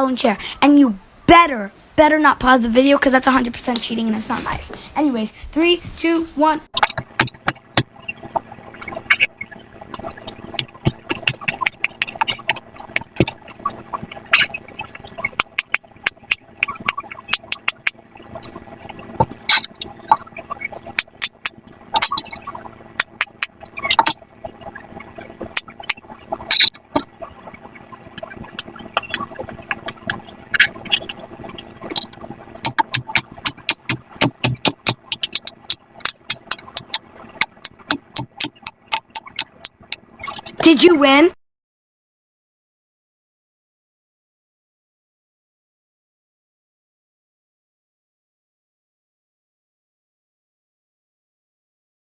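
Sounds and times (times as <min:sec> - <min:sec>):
fidget toy popping: 0:06.8 - 0:09.3, 0:10.0 - 0:14.6, 0:15.2 - 0:20.3, 0:20.9 - 0:24.2, 0:28.2 - 0:40.8.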